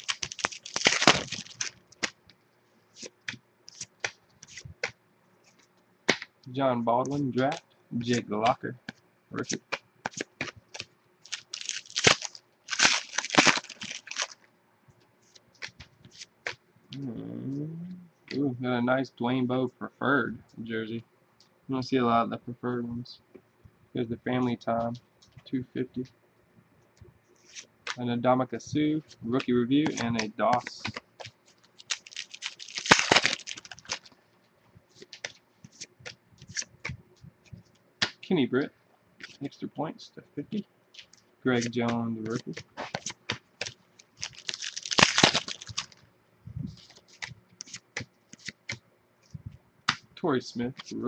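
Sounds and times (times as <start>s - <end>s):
foil wrapper crinkling and tearing: 0.0s - 2.2s, 10.1s - 14.4s, 29.8s - 34.2s, 41.0s - 46.0s, 46.8s - 47.8s
cards clicking and rustling: 0.0s - 2.3s, 3.0s - 6.3s, 7.1s - 14.4s, 15.3s - 16.6s, 29.3s - 34.2s, 35.0s - 37.0s, 41.0s - 46.0s, 46.7s - 48.8s
cards clicking: 29.4s - 34.2s, 41.0s - 46.0s, 46.8s - 48.8s.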